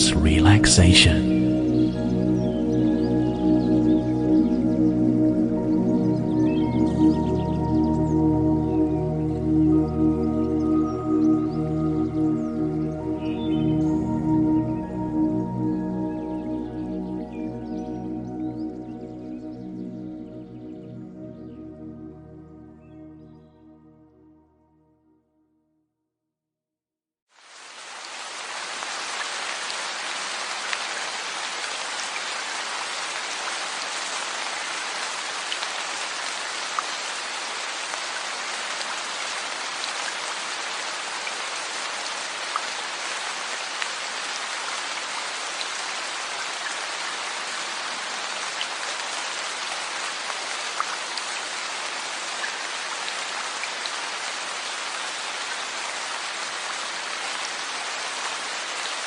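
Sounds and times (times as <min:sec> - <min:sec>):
steady rain falling: 0:27.3 - 0:59.0.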